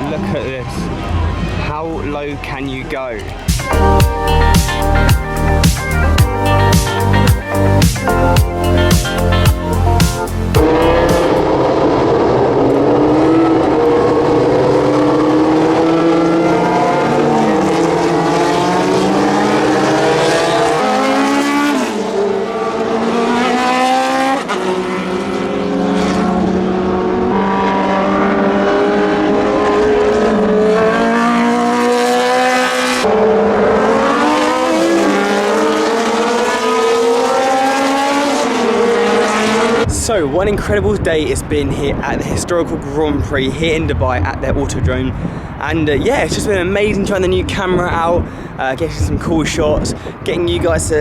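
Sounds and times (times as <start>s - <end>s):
racing car engines at high revs: 10.5s - 39.9s.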